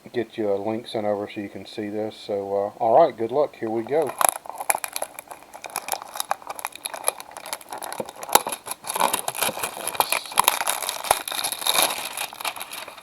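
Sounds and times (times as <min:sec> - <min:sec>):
wrapper crinkling and tearing: 0:03.9 - 0:13.0
small clicks and rustles: 0:04.0 - 0:13.0.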